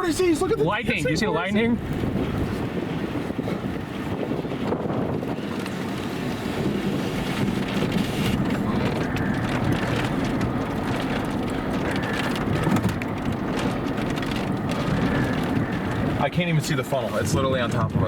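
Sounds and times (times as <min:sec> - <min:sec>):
strong wind buffeting microphone: 0:00.0 - 0:18.0
scattered crackles: 0:05.2 - 0:18.0.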